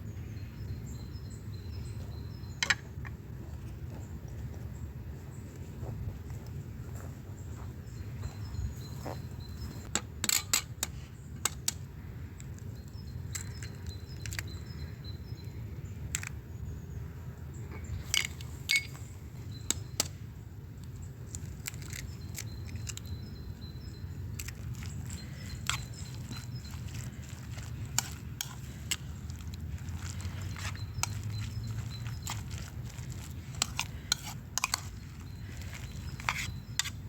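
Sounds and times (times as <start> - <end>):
faint bird chirps: 6.9 - 9.9, 12.0 - 16.0
hard objects clinking: 18.1 - 19.0, 24.4 - 37.0.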